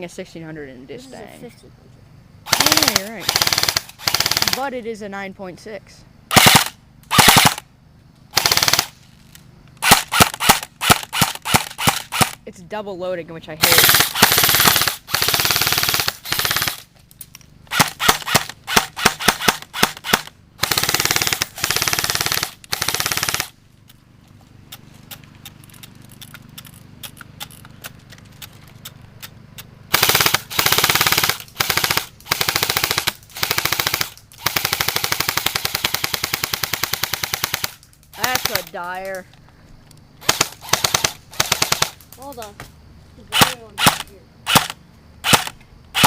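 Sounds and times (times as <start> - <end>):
airsoft rifles firing: 2.4 - 4.7, 6.3 - 7.7, 8.3 - 9.1, 9.8 - 12.4, 13.6 - 16.9, 17.7 - 23.6, 29.9 - 38.8, 40.2 - 42.3, 43.3 - 46.0.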